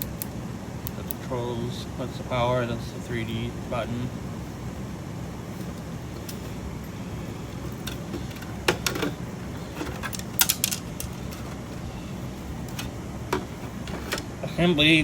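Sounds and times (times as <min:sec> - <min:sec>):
steady low hum: 0:00.0 - 0:15.0
plastic and metal parts clicking: 0:07.8 - 0:11.6.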